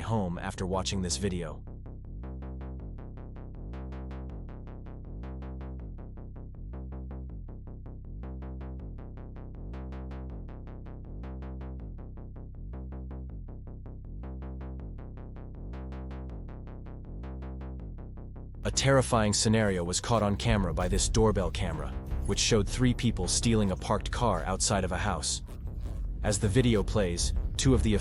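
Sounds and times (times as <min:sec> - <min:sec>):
electronic background music: 0:14.1 - 0:28.0.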